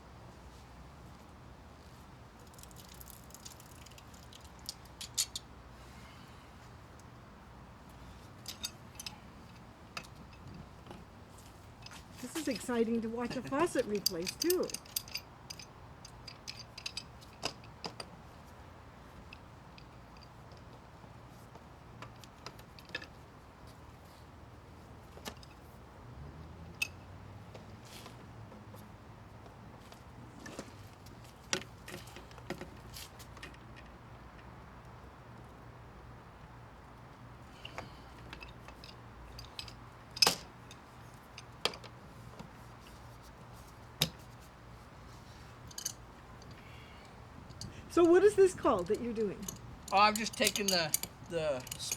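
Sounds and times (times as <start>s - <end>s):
hand tools clicking and tapping metal: 2.4s - 5.5s, 8.2s - 18.2s, 37.4s - 44.6s, 45.5s - 51.9s
metallic clicks of hand tools: 2.4s - 5.5s, 49.4s - 51.9s.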